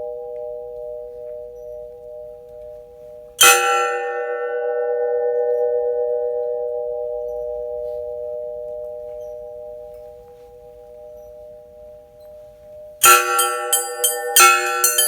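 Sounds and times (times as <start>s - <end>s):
gas cylinder bell clang: 13.0s - 15.0s.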